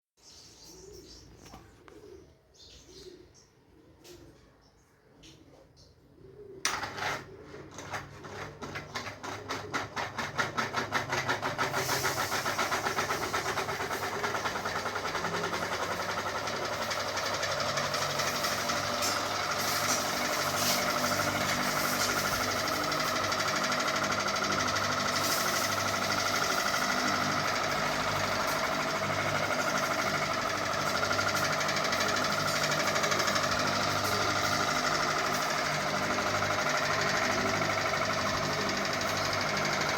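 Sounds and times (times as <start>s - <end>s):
ceiling fan whirring: 6.6s - 39.9s
fan rattle: 6.7s - 39.9s.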